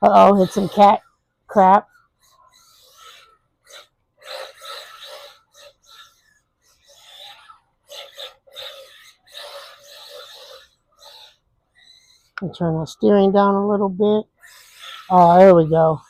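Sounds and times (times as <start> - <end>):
toy car tires sliding on floor: 2.2 - 12.3.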